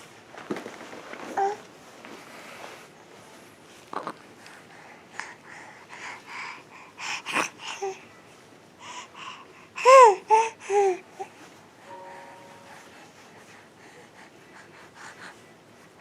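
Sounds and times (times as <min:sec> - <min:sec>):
baby babbling: 0:09.8 - 0:11.3.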